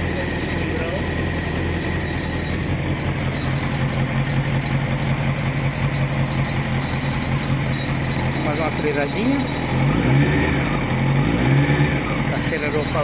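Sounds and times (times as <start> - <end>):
motorcycle engine idling: 0.0 - 11.3, 11.9 - 13.0
high-pitched whistle: 1.8 - 9.8.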